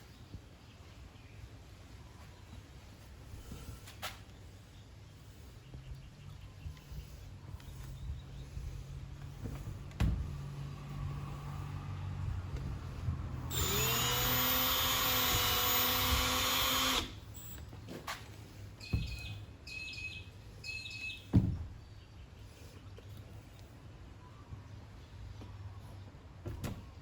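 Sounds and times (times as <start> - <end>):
cordless drill spinning: 13.5 - 17.6.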